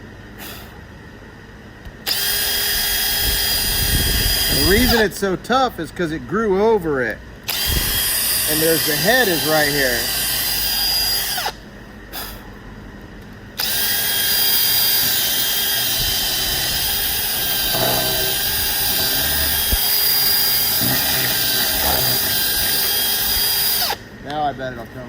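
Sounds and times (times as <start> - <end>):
power drill boring into wood: 2.1 - 5.1, 7.5 - 11.6, 13.6 - 24.0.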